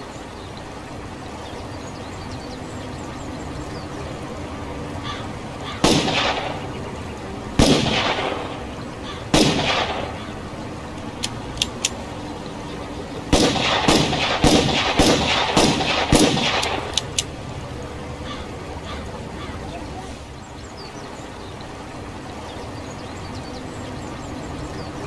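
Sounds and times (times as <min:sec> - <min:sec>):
revolver shots with echo: 0:09.3 - 0:10.2, 0:13.3 - 0:16.9.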